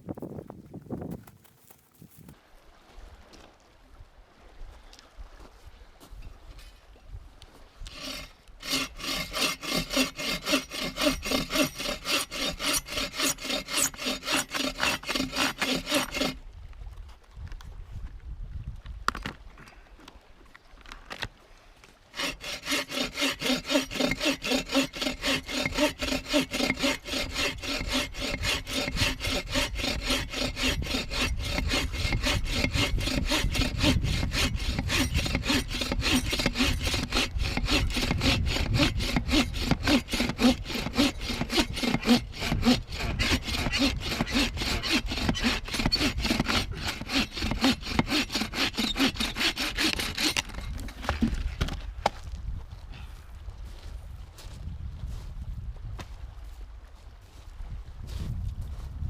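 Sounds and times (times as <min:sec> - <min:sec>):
hand saw cutting wood: 0:07.8 - 0:16.4, 0:22.1 - 0:51.8.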